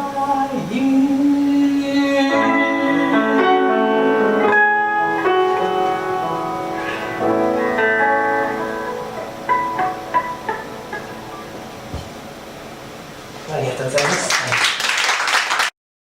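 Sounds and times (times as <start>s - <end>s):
guitar chords: 1.7s - 13.0s
plucked guitar notes: 2.3s - 12.6s.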